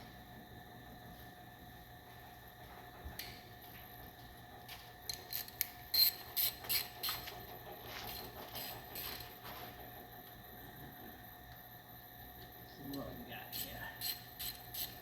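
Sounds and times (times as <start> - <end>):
hand ratchet wrench clicking: 13.5 - 15.0.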